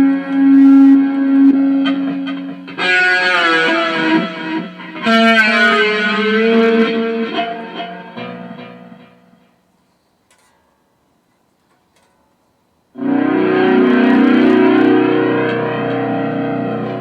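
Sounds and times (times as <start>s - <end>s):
electric guitar chords: 0.0s - 9.4s, 13.0s - 17.0s.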